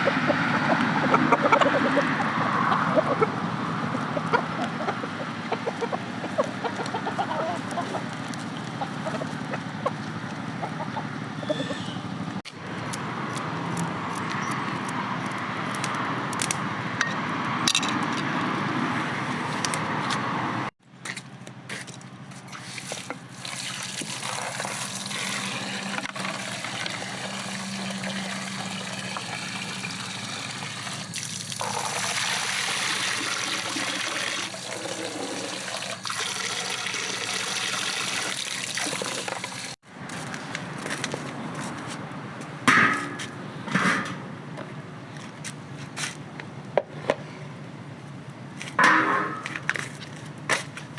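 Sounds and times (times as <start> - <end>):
water trickling and splashing: 6.4 - 10.4, 22.4 - 39.8.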